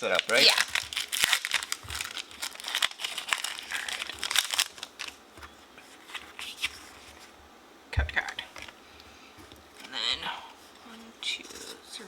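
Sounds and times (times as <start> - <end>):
foil wrapper crinkling: 0.0 - 5.2.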